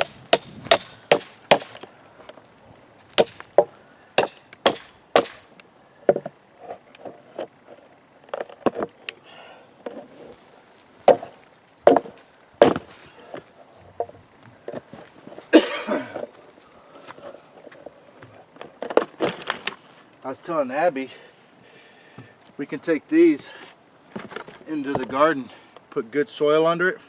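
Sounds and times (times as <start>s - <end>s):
sharp strikes on wood: 0.0s - 1.9s, 3.2s - 5.5s, 11.1s - 12.9s.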